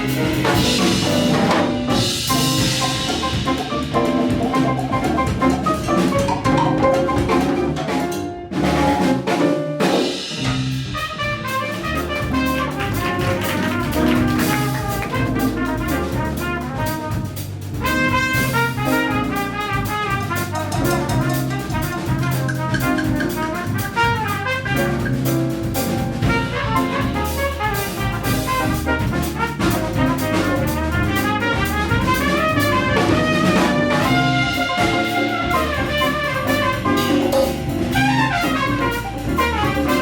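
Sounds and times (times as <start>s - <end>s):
trumpet melody: 0.0s - 9.6s, 10.4s - 40.0s
bass: 0.0s - 40.0s
drum kit: 0.0s - 40.0s
piano: 0.0s - 40.0s
hand percussion: 2.4s - 8.2s.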